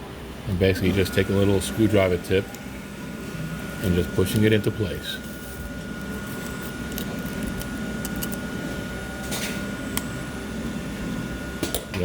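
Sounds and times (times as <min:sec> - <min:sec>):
low machine hum: 0:00.0 - 0:12.0.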